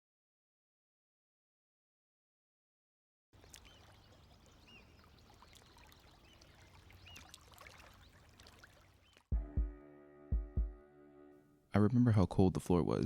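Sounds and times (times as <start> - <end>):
water bubbling: 3.4 - 9.2
water trickling and pouring: 3.4 - 9.2.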